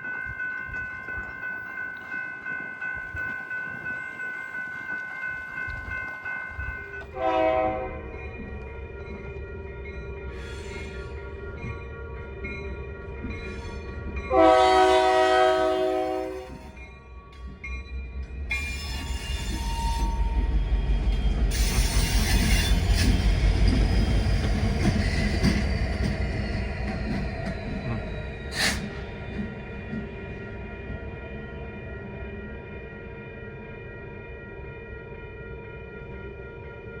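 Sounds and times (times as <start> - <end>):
train wheels rumbling on rail: 0.0 - 32.2
train horn blast: 7.2 - 8.0, 14.3 - 16.6.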